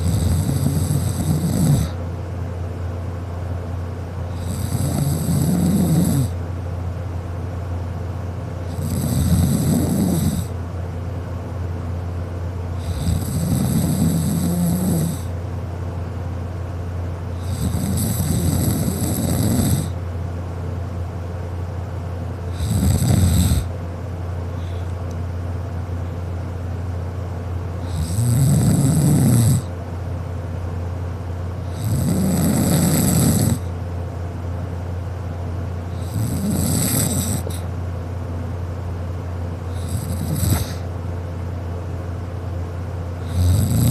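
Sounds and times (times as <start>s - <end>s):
person snoring: 0.0s - 2.0s, 4.3s - 6.4s, 8.6s - 10.6s, 12.8s - 15.4s, 17.4s - 20.0s, 22.5s - 23.7s, 27.8s - 29.7s, 31.7s - 33.7s, 35.9s - 37.7s, 39.7s - 40.9s, 43.2s - 43.9s
steady low hum: 0.0s - 43.9s.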